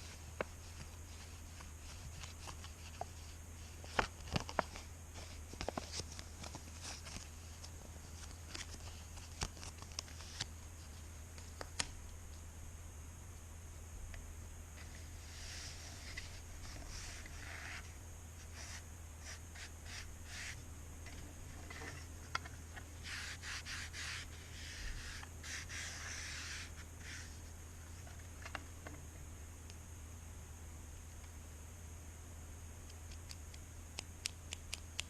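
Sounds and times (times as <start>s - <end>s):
pencil rubbing and scraping: 14.8s - 20.6s, 23.0s - 27.4s.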